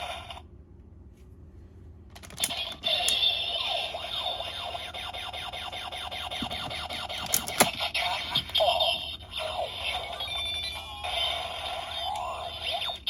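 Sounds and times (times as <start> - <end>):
rapid electronic chirps: 8.7 - 13.0.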